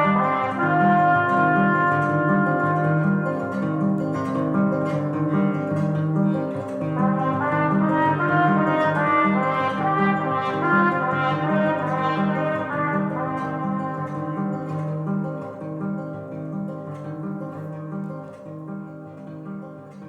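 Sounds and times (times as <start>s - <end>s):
trumpet playing: 0.0s - 5.0s, 6.8s - 15.4s.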